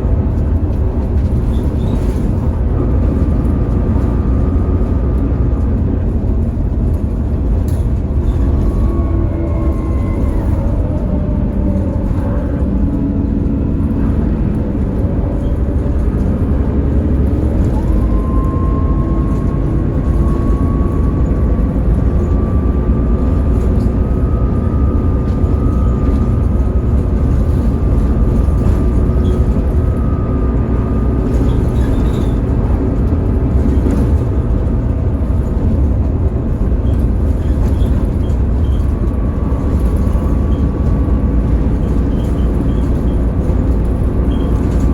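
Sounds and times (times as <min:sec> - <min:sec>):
bus engine and road rumble: 0:00.0 - 0:44.9
gearbox whine: 0:00.0 - 0:44.9.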